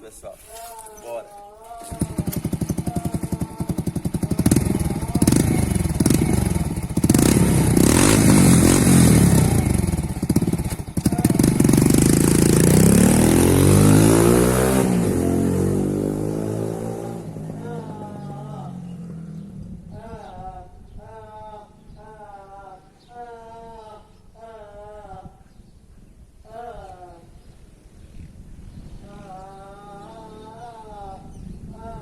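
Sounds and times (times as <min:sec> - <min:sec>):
motorcycle engine starting and revving: 0:01.7 - 0:20.0.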